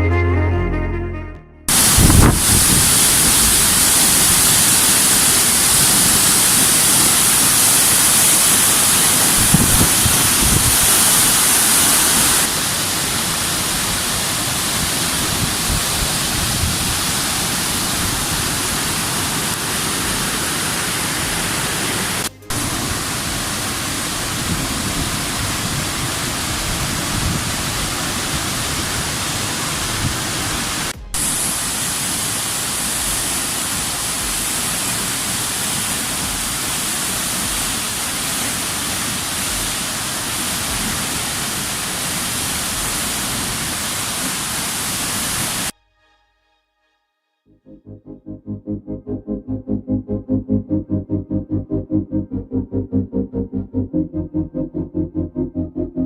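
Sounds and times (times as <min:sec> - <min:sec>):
waterfall rushing: 0:01.7 - 0:45.7.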